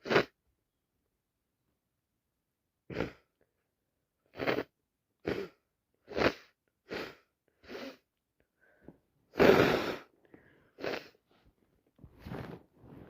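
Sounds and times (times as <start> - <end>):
loud wet sneeze: 9.4 - 10.1
person taking sharp breaths: 9.7 - 11.4.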